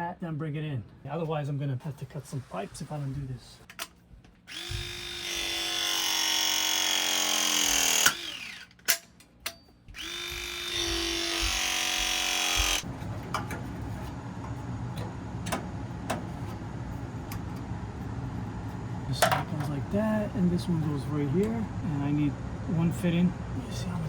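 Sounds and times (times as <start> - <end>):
pressing tool motor whine: 4.5 - 8.7, 10.0 - 12.9
low steady rumble: 12.8 - 24.0.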